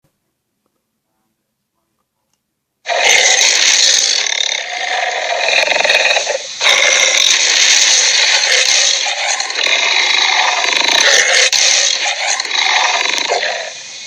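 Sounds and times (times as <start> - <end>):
dinosaur roaring: 2.9 - 13.8.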